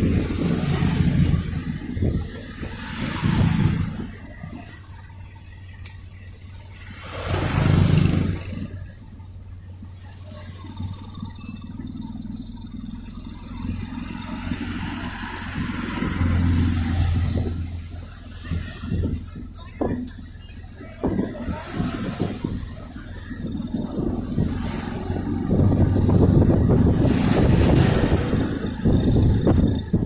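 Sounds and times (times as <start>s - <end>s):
vehicle passing close by: 0.0s - 5.1s, 6.7s - 8.8s, 13.5s - 19.2s, 21.3s - 30.0s
low engine hum of traffic: 0.0s - 30.0s.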